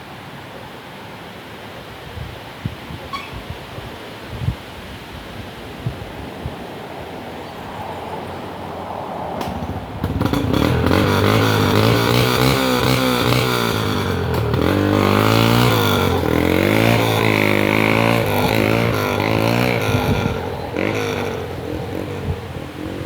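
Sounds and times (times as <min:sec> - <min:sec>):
dirt bike engine revving: 0:09.5 - 0:23.0.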